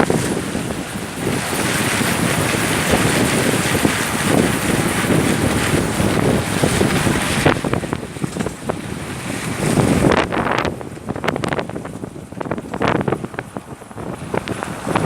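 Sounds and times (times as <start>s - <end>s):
rushing water in heavy rain: 0.0s - 15.0s
wind buffeting microphone: 0.0s - 15.0s.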